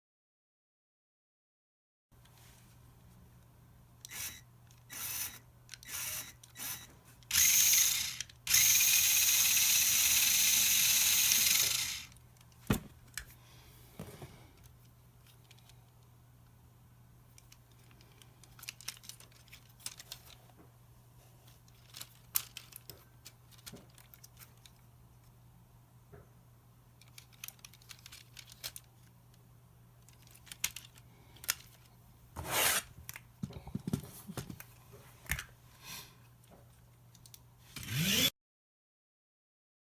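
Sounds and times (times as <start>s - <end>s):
plastic parts clicking and rattling: 14.6s - 16.1s, 17.3s - 20.5s, 21.4s - 24.8s, 27.0s - 29.4s, 30.0s - 31.9s.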